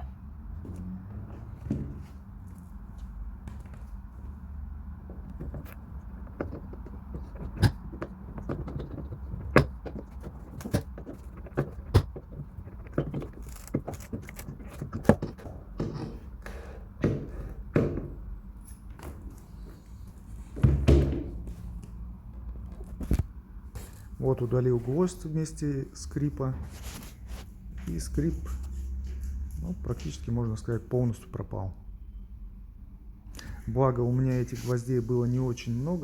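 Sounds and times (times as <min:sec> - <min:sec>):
tools knocking on wood: 0:05.0 - 0:16.3.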